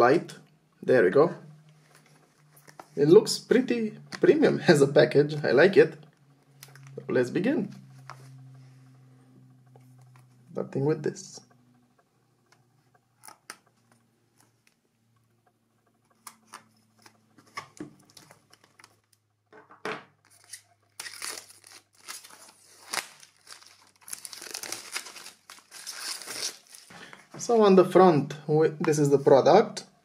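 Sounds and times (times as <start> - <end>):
wrapping crinkling and tearing: 20.3 - 26.9.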